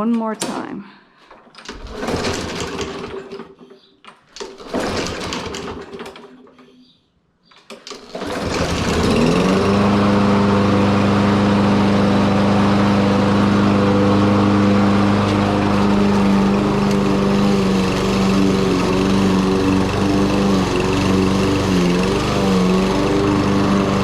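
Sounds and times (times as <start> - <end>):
recoil starter pulls: 1.3 - 3.7, 4.3 - 6.6, 7.7 - 10.2
lawn mower engine running: 1.6 - 3.4, 4.4 - 6.2, 7.9 - 24.0.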